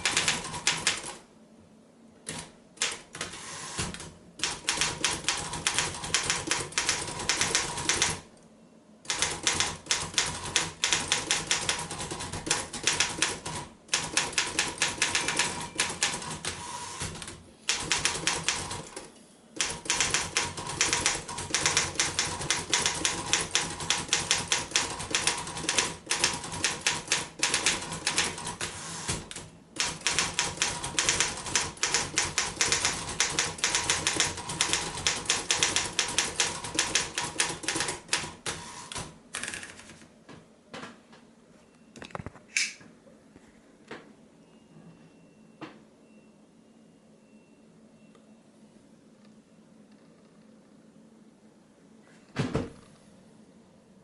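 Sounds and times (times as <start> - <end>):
manual typewriter typing: 0.0 - 1.2, 2.3 - 8.3, 9.1 - 40.0.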